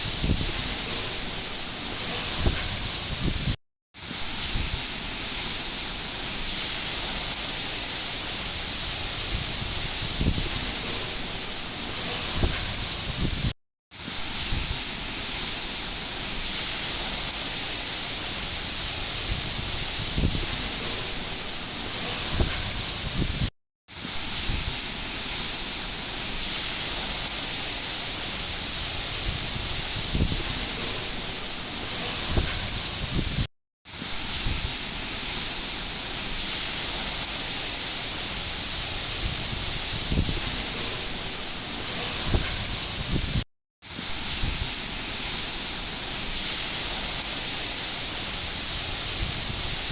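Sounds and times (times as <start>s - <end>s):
heavy rain falling: 0.0s - 3.3s, 4.4s - 13.1s, 14.4s - 23.3s, 24.4s - 33.3s, 34.1s - 43.4s.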